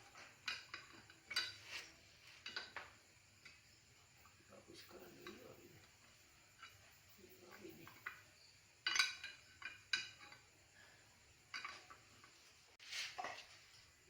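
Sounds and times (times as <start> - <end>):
metal tools clinking: 0.0 - 2.8, 6.5 - 10.8, 11.4 - 12.5.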